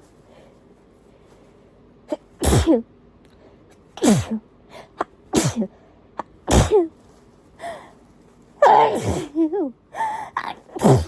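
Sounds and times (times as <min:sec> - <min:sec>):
person sneezing: 0:02.1 - 0:02.8, 0:04.0 - 0:07.0, 0:08.6 - 0:09.5, 0:10.4 - 0:11.0.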